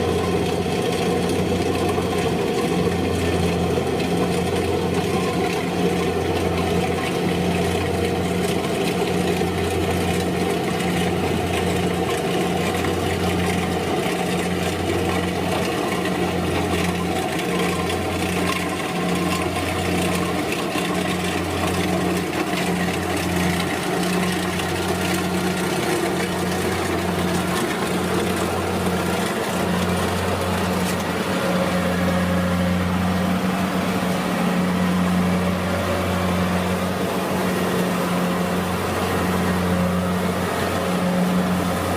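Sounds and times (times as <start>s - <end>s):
combine harvester engine humming: 0.0s - 41.9s.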